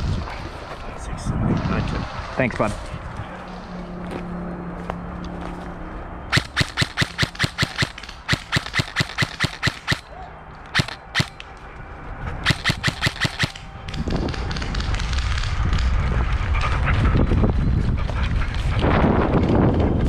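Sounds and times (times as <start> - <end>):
airsoft gun firing: 6.3 - 10.1, 10.7 - 11.4, 12.4 - 13.7.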